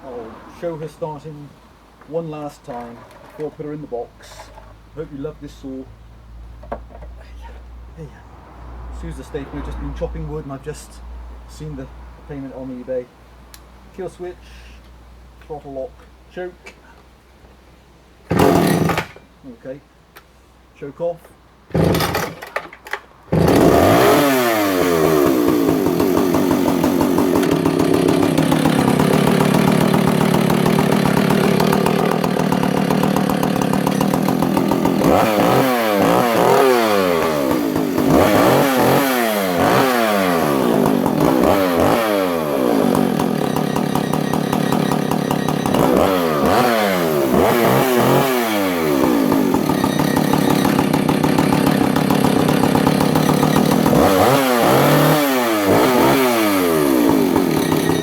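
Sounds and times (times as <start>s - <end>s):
chainsaw idling and revving: 18.3s - 19.2s, 21.7s - 22.6s, 23.3s - 58.0s.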